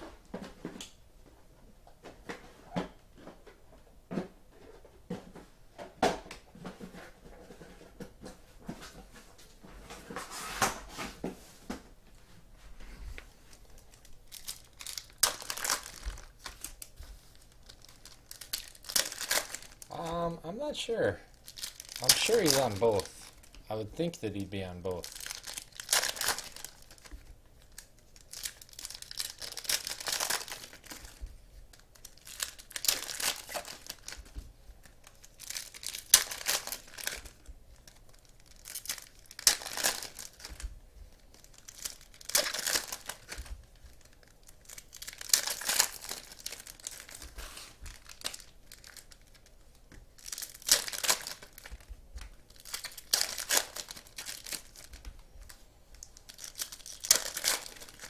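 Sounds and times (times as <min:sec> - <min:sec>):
card pack wrappers tearing: 0:13.5 - 0:58.0.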